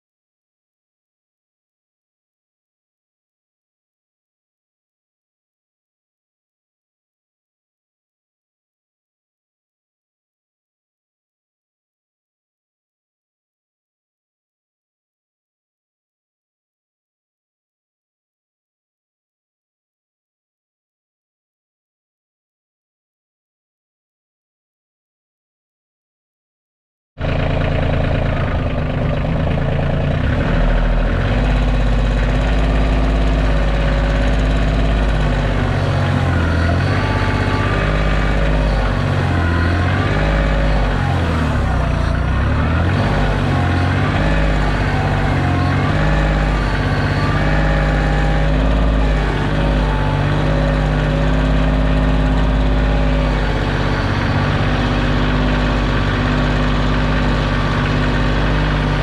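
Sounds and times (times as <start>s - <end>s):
tractor diesel engine running: 27.2s - 59.0s.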